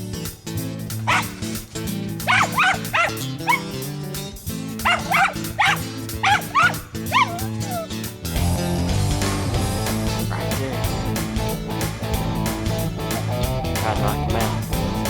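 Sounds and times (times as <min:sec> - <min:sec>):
background music: 0:00.0 - 0:15.0
dog barking: 0:01.0 - 0:01.6, 0:02.2 - 0:03.9, 0:04.8 - 0:07.9
dog whining: 0:01.1 - 0:01.5, 0:02.2 - 0:03.8, 0:04.8 - 0:08.1.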